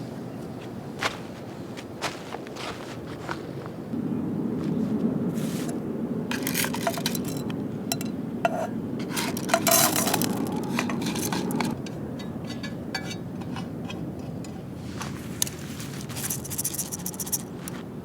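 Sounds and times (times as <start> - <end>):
metal cookware clinking: 6.3 - 15.4
short metallic rings: 6.3 - 17.6.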